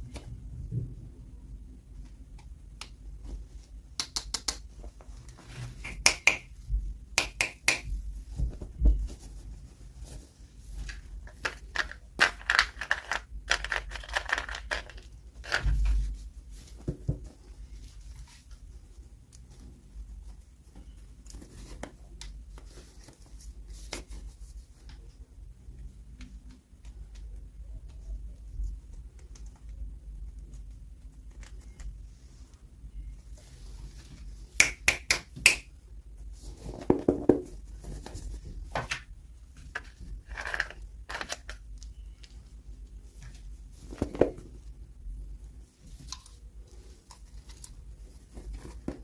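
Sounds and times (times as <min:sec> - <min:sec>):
plastic toy pieces clicking: 0:11.4 - 0:15.6.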